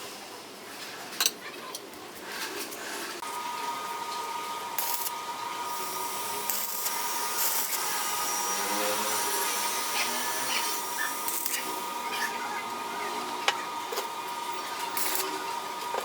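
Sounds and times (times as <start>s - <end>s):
power tool whining: 3.2s - 16.0s.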